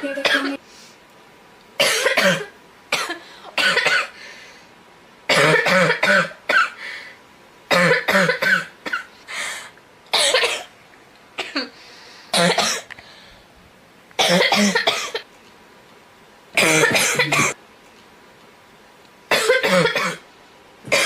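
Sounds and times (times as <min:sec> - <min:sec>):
girl coughing: 0:00.0 - 0:00.6, 0:01.8 - 0:04.2, 0:05.3 - 0:06.8, 0:07.7 - 0:09.1, 0:10.2 - 0:10.7, 0:11.4 - 0:11.7, 0:12.4 - 0:12.9, 0:14.2 - 0:15.2, 0:16.6 - 0:17.6, 0:19.3 - 0:20.2.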